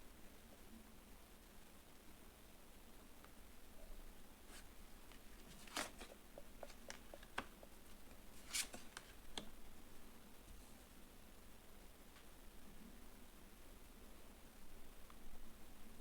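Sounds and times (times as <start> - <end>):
cards clicking and rustling: 4.5 - 9.5.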